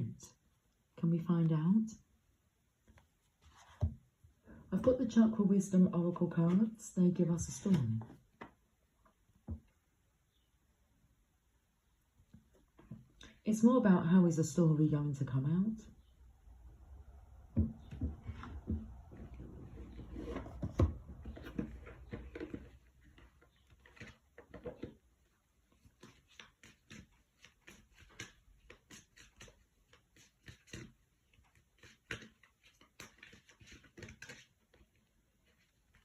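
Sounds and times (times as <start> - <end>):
cards being shuffled: 19.1 - 25.0, 25.7 - 36.0.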